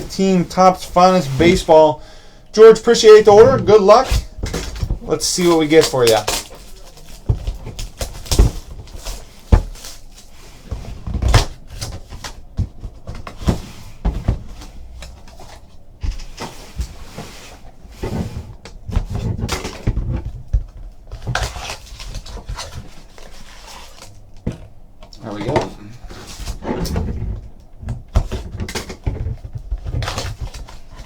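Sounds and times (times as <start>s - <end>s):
cardboard rustling: 0.0s - 24.6s.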